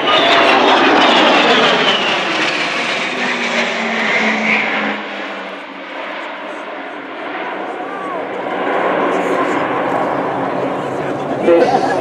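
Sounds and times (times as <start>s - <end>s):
jet bomber flying past: 0.0s - 12.0s.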